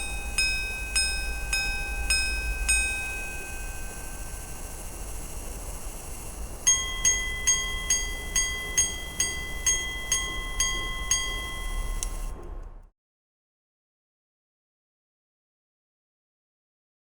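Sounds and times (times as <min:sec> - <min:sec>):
pocket watch chimes: 0:00.0 - 0:12.5.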